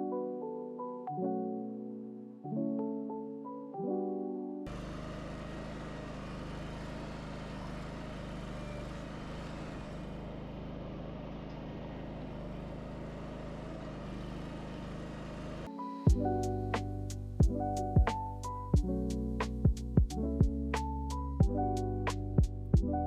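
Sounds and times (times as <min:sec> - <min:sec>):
engine running steadily: 0:04.7 - 0:15.7.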